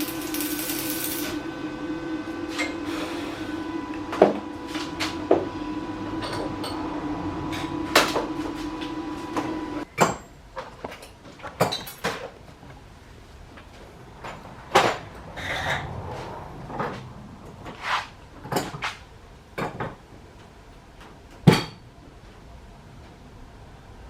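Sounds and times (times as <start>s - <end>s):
steady hum: 0.0s - 9.9s.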